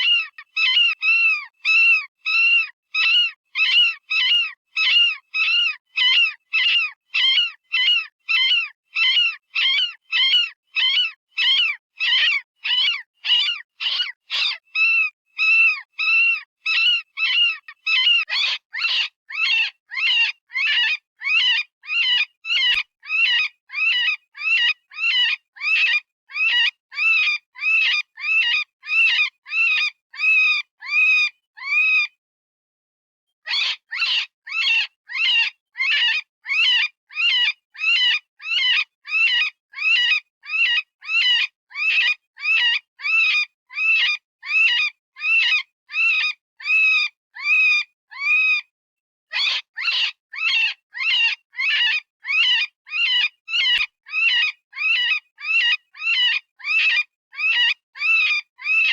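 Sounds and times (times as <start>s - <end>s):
synthesized rabbit distress cries: 33.5s - 48.6s.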